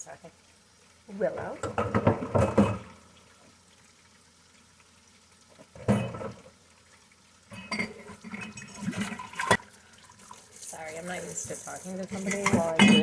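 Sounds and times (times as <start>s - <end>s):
dishes and glassware clattering: 1.6s - 2.9s, 5.8s - 6.4s, 7.5s - 9.6s, 12.1s - 13.0s.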